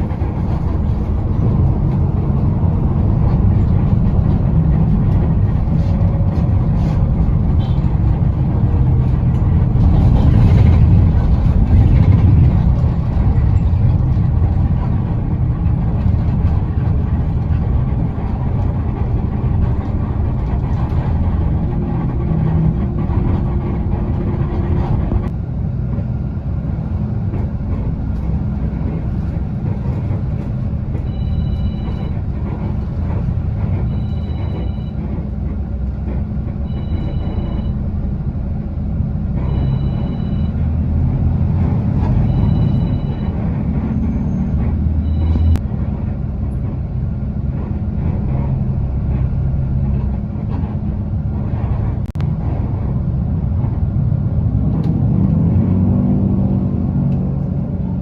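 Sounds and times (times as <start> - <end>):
bus engine rumble: 0.0 - 58.0
electronic two-tone beep: 31.1 - 32.2, 33.9 - 35.0, 36.7 - 37.8, 39.4 - 40.6, 42.2 - 43.4, 45.0 - 45.6.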